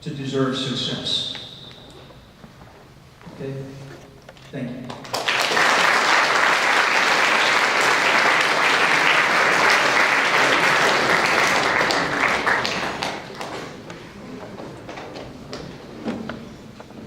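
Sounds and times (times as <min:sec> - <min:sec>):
audience applauding: 0:05.0 - 0:14.0.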